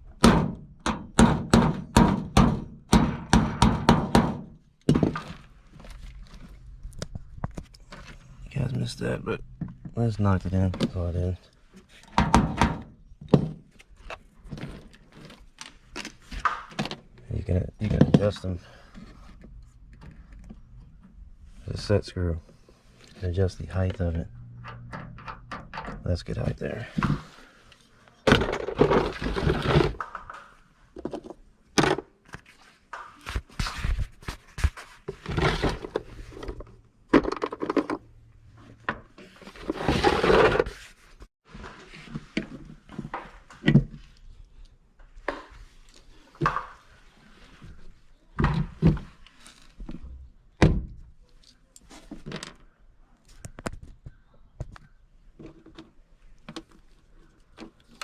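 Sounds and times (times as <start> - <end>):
knocks and thunks on equipment: 0.2 - 5.4.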